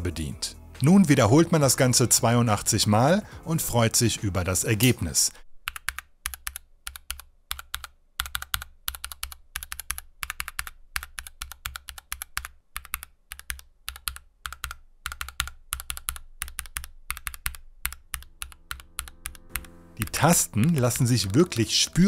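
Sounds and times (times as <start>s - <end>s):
mechanical keyboard typing: 5.6s - 22.0s.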